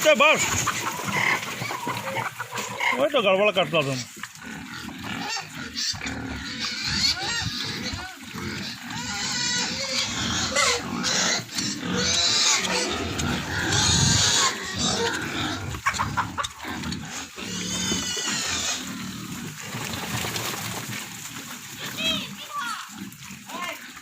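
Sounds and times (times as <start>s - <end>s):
pig grunting noises: 0.0s - 20.2s
pigs squealing: 0.0s - 20.6s.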